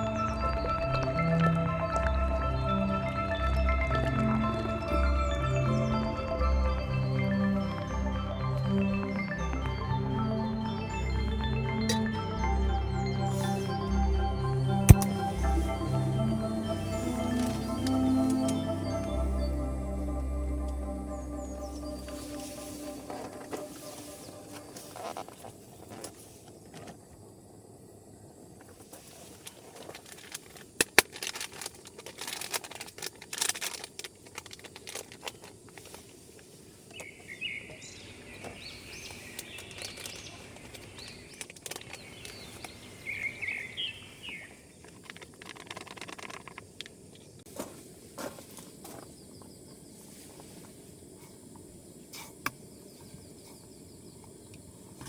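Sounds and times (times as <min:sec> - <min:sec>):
bird singing: 0:00.0 - 0:25.4, 0:36.9 - 0:44.8.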